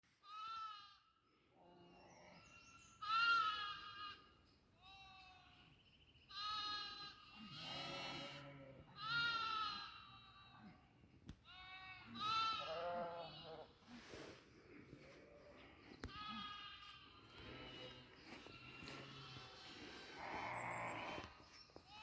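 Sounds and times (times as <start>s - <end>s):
goats bleating: 6.4s - 10.8s, 11.5s - 13.8s, 15.1s - 22.0s.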